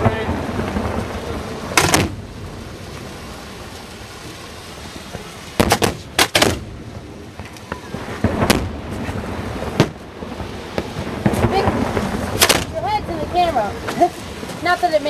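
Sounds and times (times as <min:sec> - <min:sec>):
fireworks bangs: 0:00.0 - 0:15.0.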